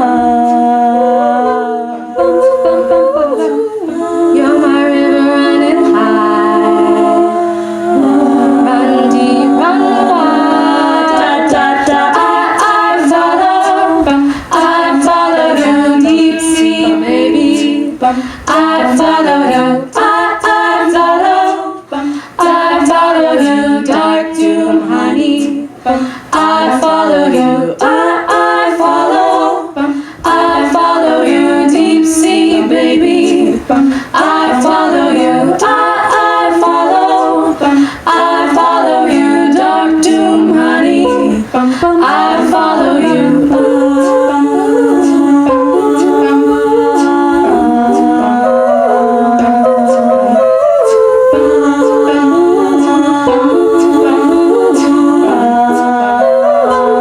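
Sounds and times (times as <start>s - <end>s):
a cappella group singing: 0.0s - 57.0s
sharp rhythmic clicks: 26.3s - 57.0s.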